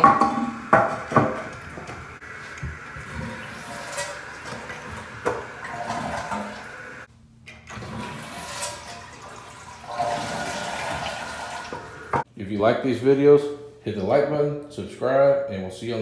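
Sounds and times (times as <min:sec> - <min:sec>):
toilet flushing: 0:00.0 - 0:12.3.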